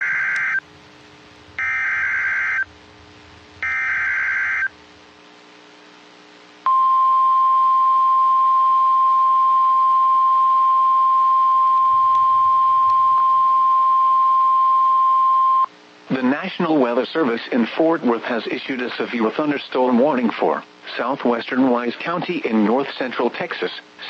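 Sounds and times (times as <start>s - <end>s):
warning alarm tone: 0.0s - 0.6s, 1.6s - 2.7s, 3.6s - 4.8s, 6.7s - 15.7s
data tone bursts: 3.6s - 4.7s, 6.7s - 15.7s.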